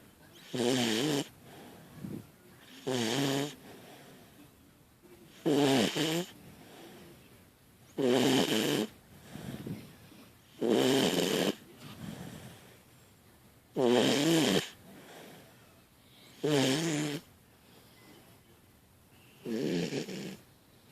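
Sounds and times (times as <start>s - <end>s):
puppy snoring: 0.4s - 3.7s, 5.3s - 7.0s, 7.9s - 9.8s, 10.5s - 12.7s, 13.7s - 15.4s, 16.3s - 17.3s, 19.4s - 20.5s
faint breathing: 1.3s - 2.8s, 3.5s - 4.6s, 6.3s - 7.4s, 8.9s - 10.6s, 11.6s - 13.3s, 14.7s - 16.5s, 17.5s - 19.5s.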